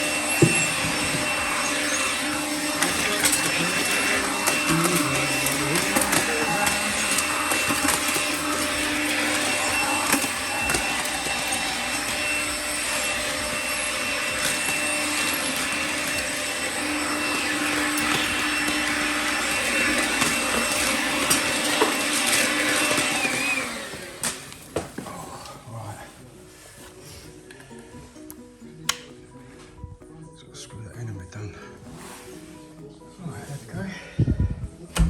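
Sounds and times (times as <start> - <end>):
electric motor rushing noise: 0.0 - 24.7.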